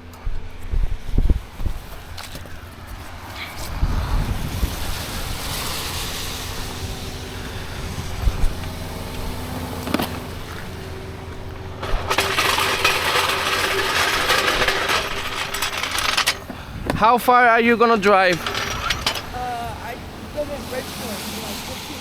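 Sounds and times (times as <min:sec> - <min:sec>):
vehicle tyre hiss: 0:01.4 - 0:22.0
car passing by: 0:01.8 - 0:22.0.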